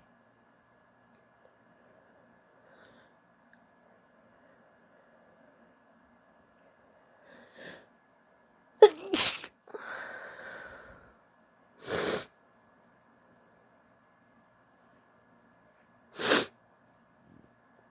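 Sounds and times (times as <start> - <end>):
woman sneezing: 8.8 - 9.6
short breathy burst: 8.8 - 9.9.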